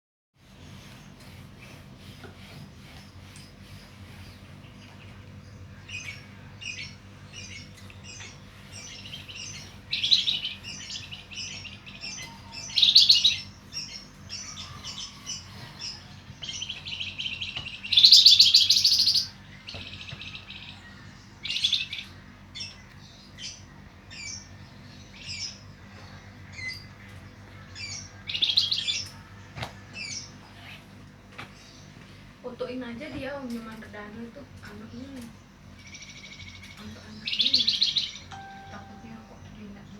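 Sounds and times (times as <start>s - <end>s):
faint low hum: 0.4s - 39.9s
bird high chirps: 5.8s - 23.6s, 35.8s - 39.9s.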